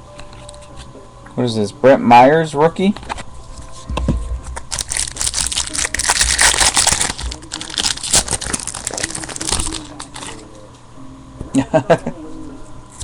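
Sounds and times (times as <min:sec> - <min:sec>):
cards crinkling and crackling: 0:04.6 - 0:10.4.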